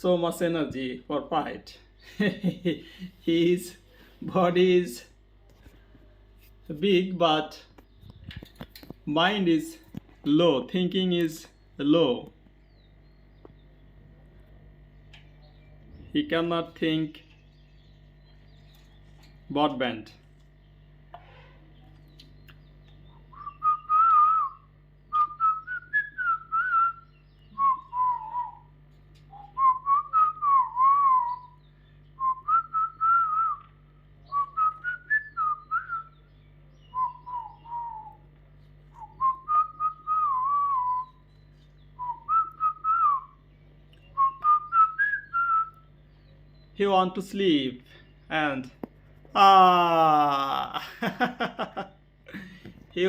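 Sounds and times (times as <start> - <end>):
faint low hum: 0.0 - 53.0
parrot whistling a tune: 23.3 - 28.6, 42.0 - 43.3, 44.2 - 45.9.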